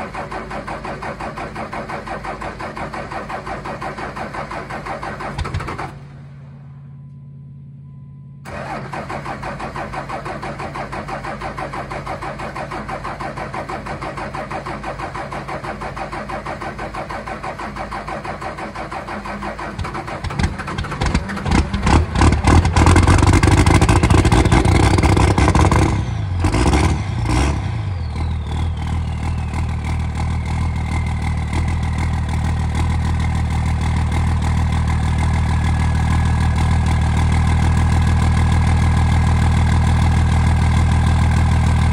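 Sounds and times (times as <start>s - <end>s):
diesel engine cranking: 0.0s - 6.4s, 8.4s - 41.9s
diesel engine running: 0.0s - 41.9s.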